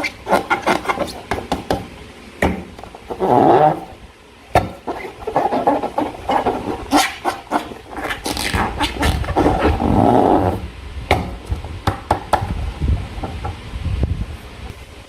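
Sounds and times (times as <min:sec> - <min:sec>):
slime squishing by hand: 0:04.6 - 0:10.6.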